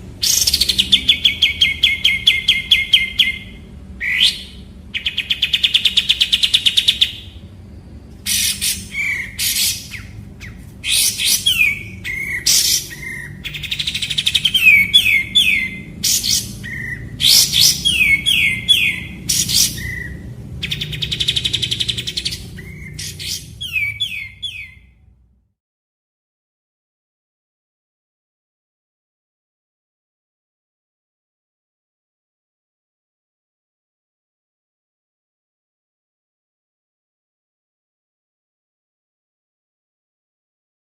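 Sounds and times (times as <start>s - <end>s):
faint low hum: 0.0s - 25.5s
bulbul singing trills and whistles: 0.1s - 7.4s, 8.2s - 25.0s.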